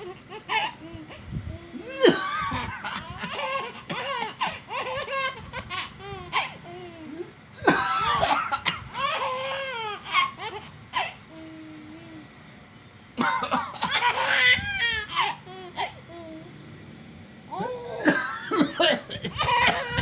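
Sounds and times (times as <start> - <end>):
small child laughing: 0.0 - 12.2, 13.7 - 16.5, 17.5 - 20.0
man coughing: 1.8 - 4.4, 7.6 - 8.9, 13.2 - 14.2, 17.6 - 20.0.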